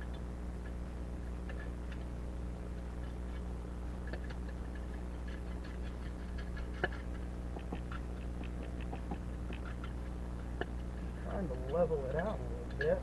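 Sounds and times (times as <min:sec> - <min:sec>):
steady low hum: 0:00.0 - 0:13.0
hand tools clicking and scraping: 0:10.8 - 0:13.0.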